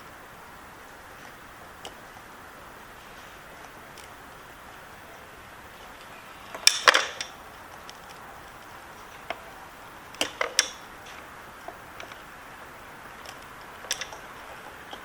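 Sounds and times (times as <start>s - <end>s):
hand tools clicking on plastic connector: 6.6s - 8.2s, 10.2s - 10.8s, 13.2s - 14.2s.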